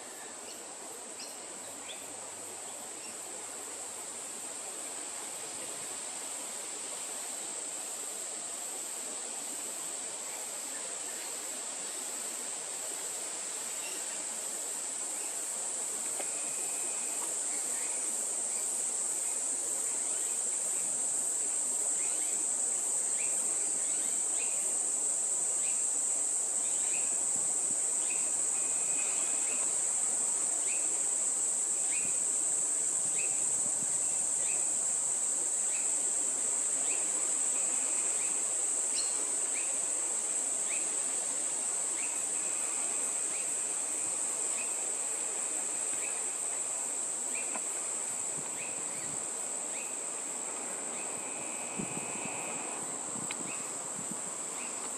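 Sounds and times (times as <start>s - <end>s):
high-pitched insect drone: 13.6s - 54.9s.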